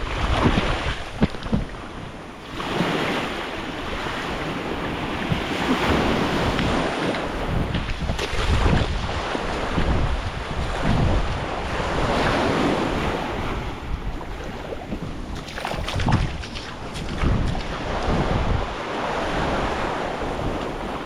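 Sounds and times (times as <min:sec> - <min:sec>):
sea waves on sandy beach: 0:00.0 - 0:21.0
wind buffeting microphone: 0:00.0 - 0:21.0.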